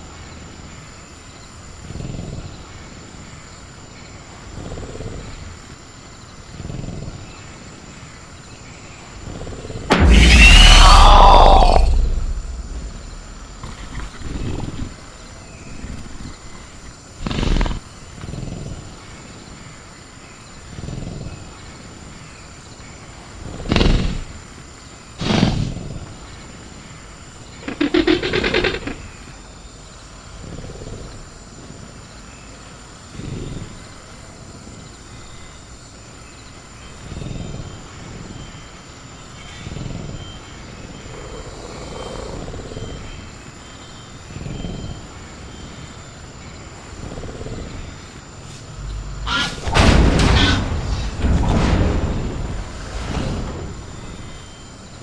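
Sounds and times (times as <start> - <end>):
crickets chirring: 0.0 - 55.0
rasping creature call: 9.9 - 14.1, 48.6 - 49.8
creature growling and snorting: 9.9 - 14.9, 41.0 - 43.0.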